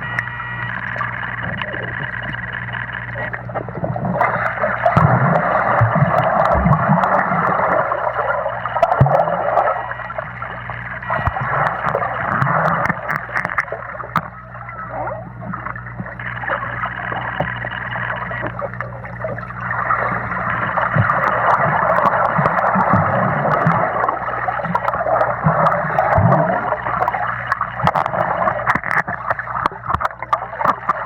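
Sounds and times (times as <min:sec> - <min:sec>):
steady low hum: 0:00.0 - 0:31.0
water bubbling underwater: 0:00.0 - 0:31.0.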